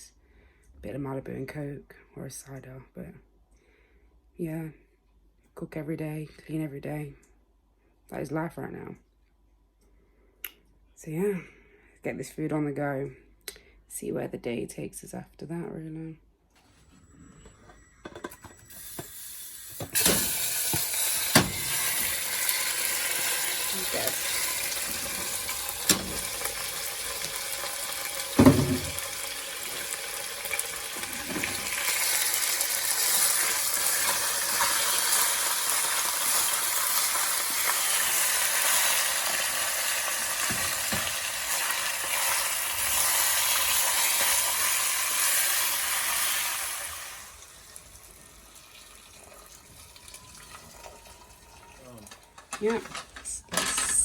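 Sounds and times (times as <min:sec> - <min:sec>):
meat sizzling in a pot: 0:18.4 - 0:53.6
utensil clunking on pot: 0:19.8 - 0:27.5, 0:28.3 - 0:29.9, 0:50.1 - 0:54.0.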